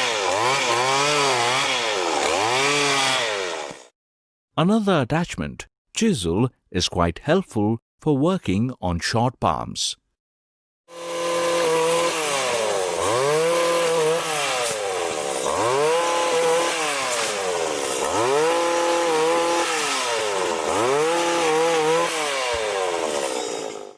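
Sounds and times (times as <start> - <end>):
small engine revving: 0.0 - 3.9, 10.9 - 23.9.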